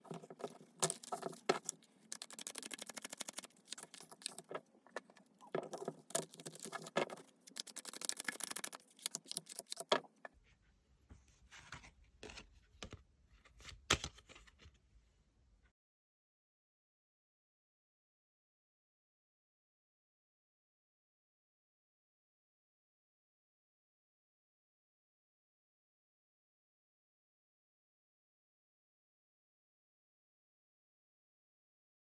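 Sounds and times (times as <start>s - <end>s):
cards being shuffled: 0.0s - 4.6s, 5.6s - 10.0s.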